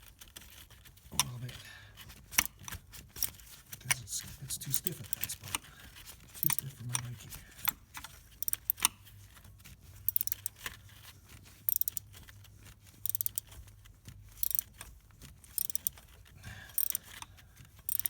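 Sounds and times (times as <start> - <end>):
hand ratchet clicking: 2.3 - 4.0, 4.7 - 9.0, 10.0 - 10.8, 11.6 - 12.2, 12.8 - 13.6, 14.3 - 16.1, 16.7 - 18.0.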